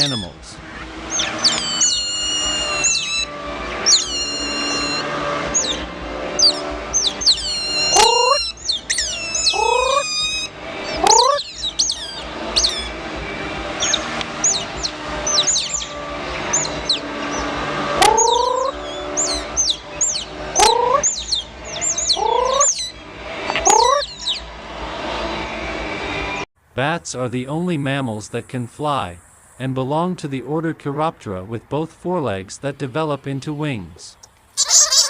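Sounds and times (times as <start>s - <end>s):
otters chirping and squeaking: 0.0s - 5.8s, 6.4s - 13.0s, 13.8s - 24.4s, 34.2s - 35.0s.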